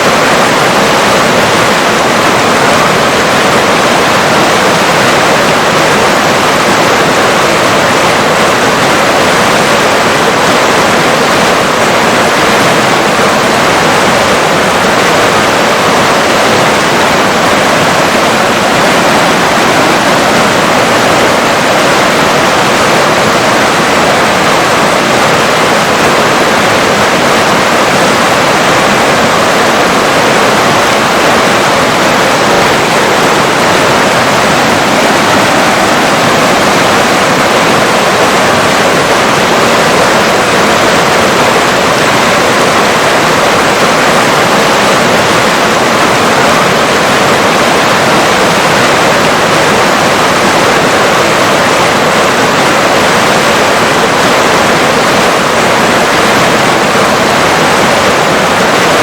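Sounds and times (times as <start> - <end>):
river water rushing: 0.0 - 59.0.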